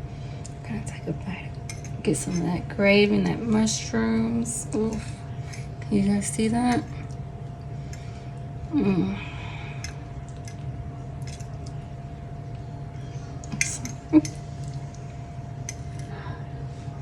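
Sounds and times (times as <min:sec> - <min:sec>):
steady hum: 0:00.0 - 0:17.0
woman humming mmm: 0:08.7 - 0:09.4.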